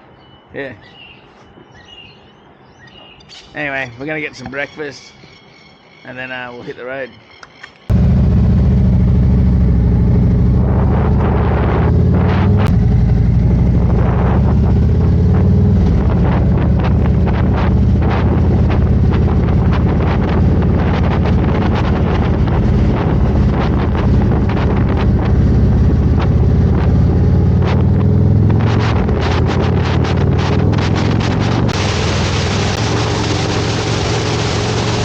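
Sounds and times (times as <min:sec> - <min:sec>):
motorcycle engine running: 0:07.9 - 0:35.0
wind buffeting microphone: 0:09.0 - 0:31.9.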